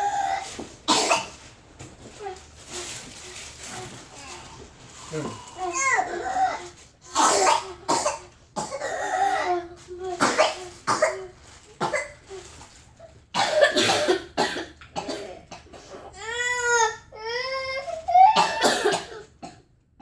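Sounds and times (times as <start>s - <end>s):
child coughing harshly: 0.0s - 1.4s, 5.1s - 12.2s, 13.4s - 17.0s, 18.2s - 19.7s.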